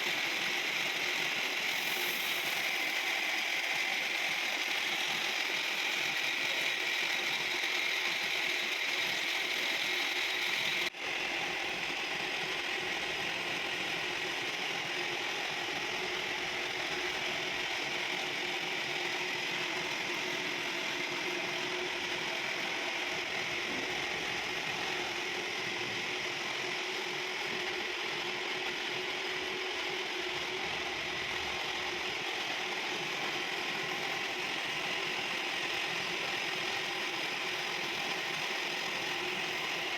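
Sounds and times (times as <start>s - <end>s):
machine tool gears whirring: 0.0s - 12.2s.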